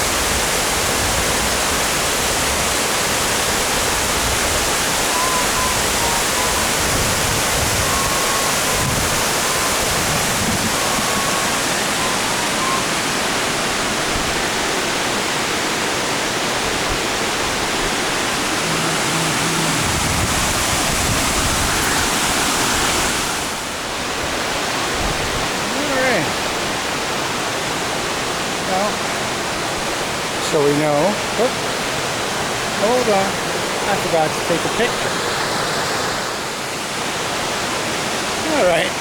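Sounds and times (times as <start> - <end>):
waterfall rushing: 0.0 - 39.0.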